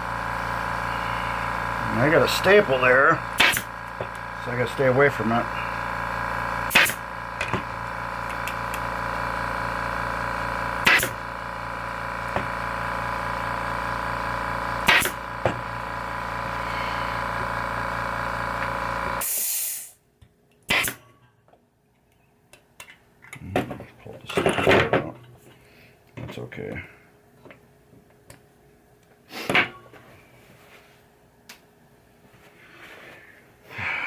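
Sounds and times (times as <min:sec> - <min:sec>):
air compressor humming: 0:00.0 - 0:20.0, 0:32.2 - 0:34.0
pneumatic staple gun snaps: 0:03.4 - 0:04.3, 0:06.7 - 0:08.9, 0:10.8 - 0:11.2, 0:14.8 - 0:15.6, 0:18.6 - 0:20.0, 0:20.6 - 0:21.0.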